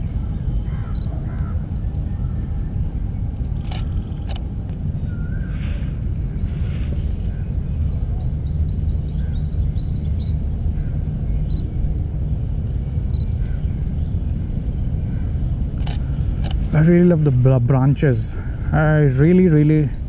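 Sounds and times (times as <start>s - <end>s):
birds singing: 0.0s - 20.0s
low outdoor rumble: 0.0s - 20.0s
sharp clicks: 3.6s - 4.5s, 15.8s - 16.7s.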